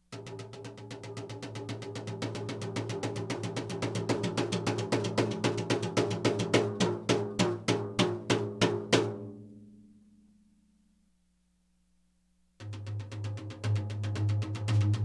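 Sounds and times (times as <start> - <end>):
drum roll: 0.2 - 9.2, 12.6 - 15.0.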